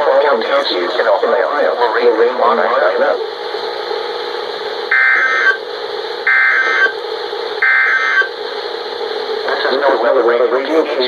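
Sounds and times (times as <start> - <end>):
buzzy digital data tones: 4.9 - 5.6, 6.3 - 7.0, 7.6 - 8.3.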